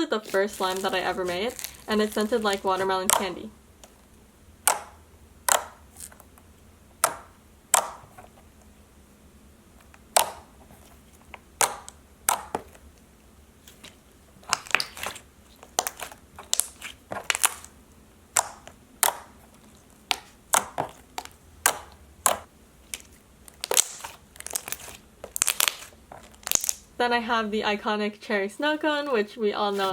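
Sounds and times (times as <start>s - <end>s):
slime popping and clicking: 0.5s - 4.0s, 4.6s - 6.3s, 7.0s - 8.1s, 10.1s - 10.5s, 11.6s - 12.8s, 14.4s - 17.7s, 18.3s - 26.9s.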